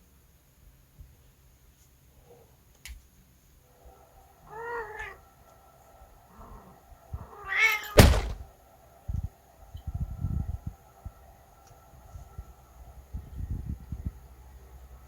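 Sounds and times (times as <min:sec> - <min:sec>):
cat meowing: 0:04.5 - 0:05.2, 0:06.4 - 0:08.1
sharp thump: 0:08.0 - 0:08.5.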